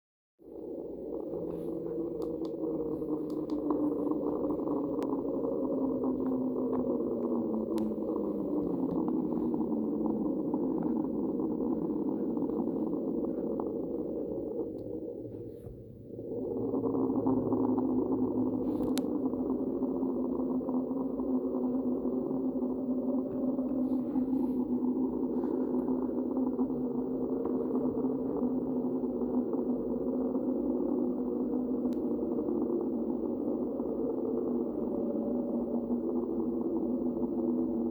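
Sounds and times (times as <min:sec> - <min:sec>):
low muffled creature rumble: 0:00.4 - 0:37.9
faint clicks: 0:01.3 - 0:15.0, 0:18.6 - 0:19.4, 0:31.1 - 0:32.8.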